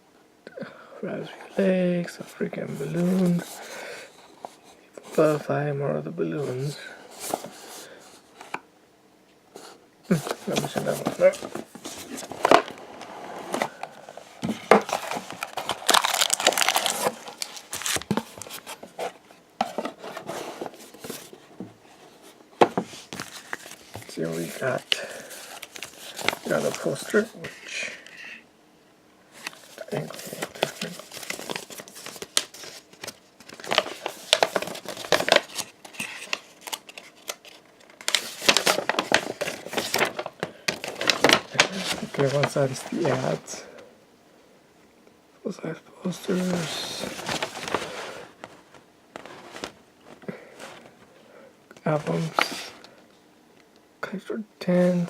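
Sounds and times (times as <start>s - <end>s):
packaging crinkling and rustling: 10.1s - 21.5s, 22.1s - 27.3s, 29.4s - 43.6s, 46.1s - 51.0s.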